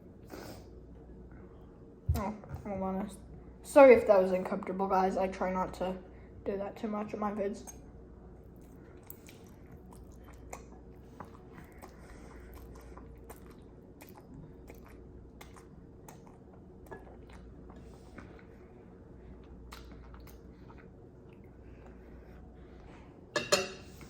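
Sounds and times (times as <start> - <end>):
person chewing noodles: 8.5 - 22.9.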